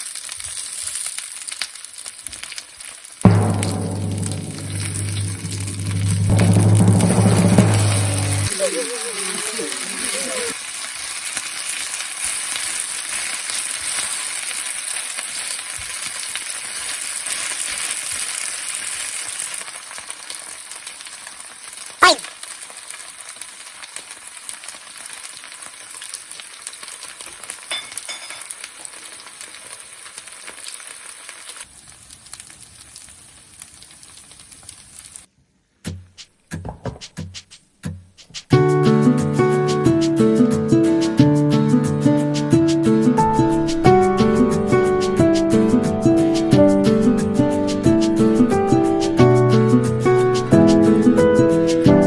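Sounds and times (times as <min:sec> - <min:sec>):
food sizzling in a pan: 0:00.0 - 0:35.3
sharp knock: 0:03.3 - 0:08.5, 0:22.0 - 0:22.3.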